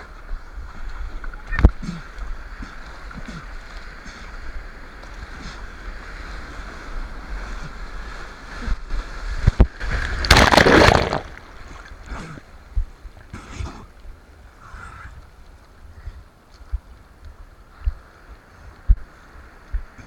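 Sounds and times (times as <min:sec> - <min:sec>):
sea water sloshing in surf: 0:00.0 - 0:12.1
wave splashing: 0:00.0 - 0:12.2.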